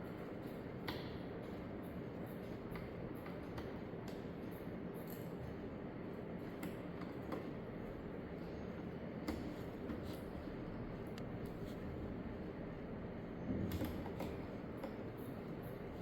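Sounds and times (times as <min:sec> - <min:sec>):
low background hum: 0:00.0 - 0:16.0
faint clicks and taps: 0:02.4 - 0:05.3, 0:06.4 - 0:07.6.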